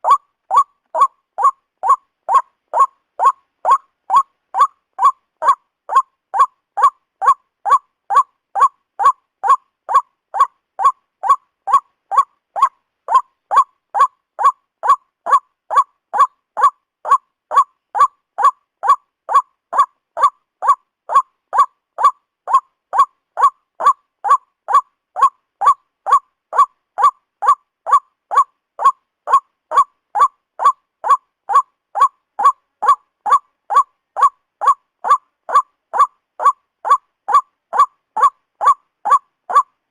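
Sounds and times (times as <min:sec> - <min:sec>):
waterhen calling: 0:00.0 - 0:39.7.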